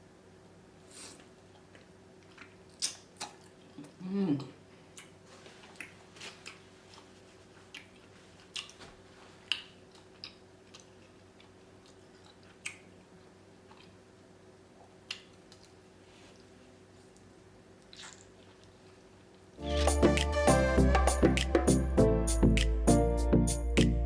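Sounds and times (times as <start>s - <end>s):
faint steady hum: 0.0s - 24.0s
wet mouth smacks and bites: 2.3s - 3.5s, 17.8s - 18.7s.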